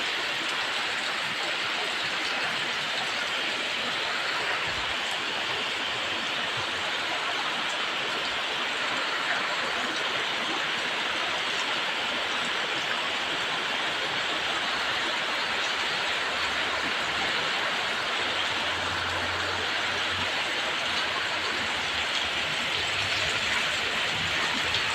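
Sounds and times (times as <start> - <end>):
heavy rain hissing: 11.3 - 24.9.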